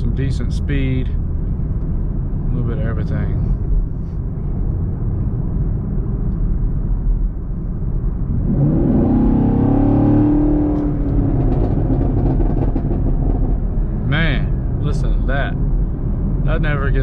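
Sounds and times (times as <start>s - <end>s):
car engine rumbling and accelerating: 0.0s - 17.0s
exhaust crackles and pops: 10.2s - 17.0s.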